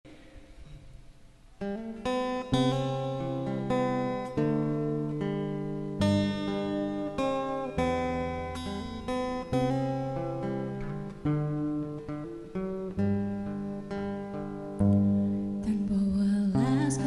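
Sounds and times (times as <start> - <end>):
acoustic guitar chords: 0.1 - 17.0.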